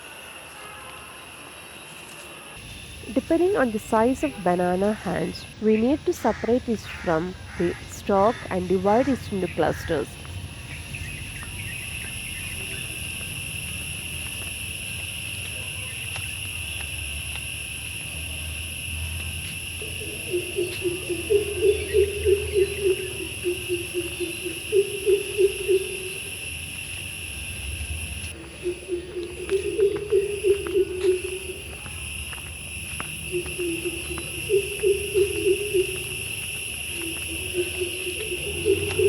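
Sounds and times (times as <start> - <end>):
bird hooting call: 19.8 - 26.4, 28.5 - 31.8, 33.3 - 36.3, 37.0 - 39.0.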